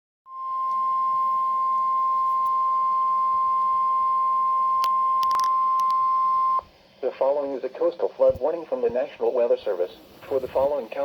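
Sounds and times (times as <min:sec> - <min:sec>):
steady alarm tone: 0:00.3 - 0:06.6
radio static crackles: 0:04.8 - 0:11.0.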